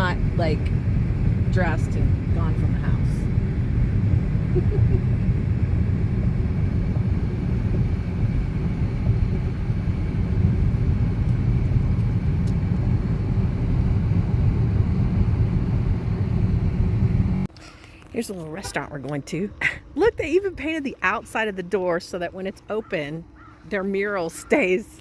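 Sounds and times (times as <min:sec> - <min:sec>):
car engine and tyre rumble: 0:00.0 - 0:18.3.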